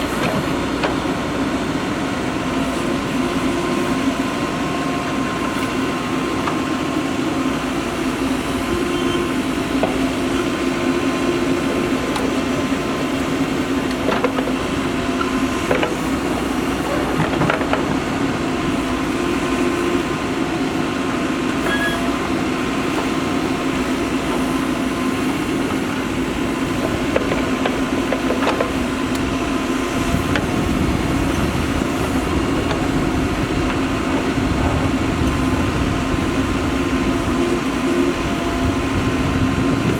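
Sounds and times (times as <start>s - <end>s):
diesel engine running: 0.0s - 39.9s
deep rumble: 29.9s - 37.4s.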